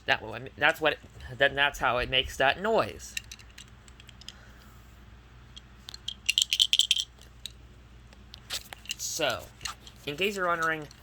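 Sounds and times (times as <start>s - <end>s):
plastic pieces rattling in toy: 6.0s - 7.1s.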